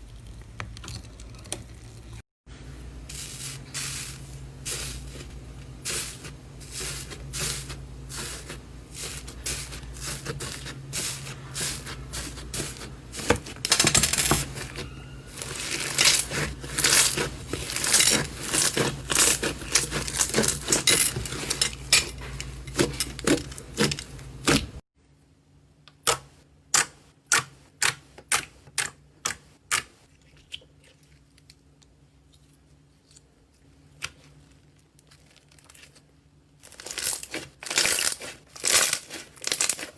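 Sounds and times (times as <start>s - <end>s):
slime crackling and popping: 36.7s - 39.9s.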